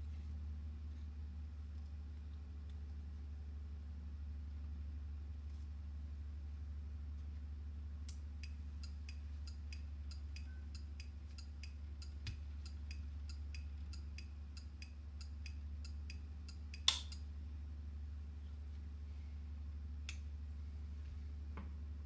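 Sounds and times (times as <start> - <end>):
steady low hum: 0.0 - 22.0
turn-signal relay clicking: 8.1 - 17.3.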